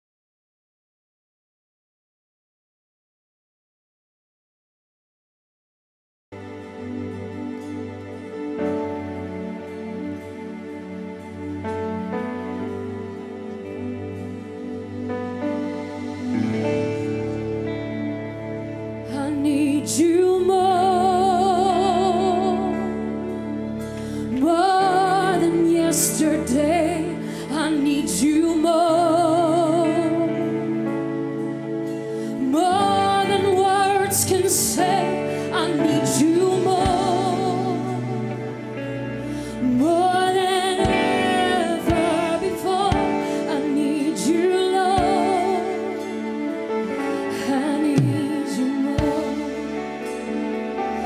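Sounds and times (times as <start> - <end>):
woman singing gospel song: 19.1 - 23.0, 24.1 - 30.8, 32.3 - 38.4, 39.6 - 46.1, 47.2 - 50.0
live band playing: 30.0 - 51.0.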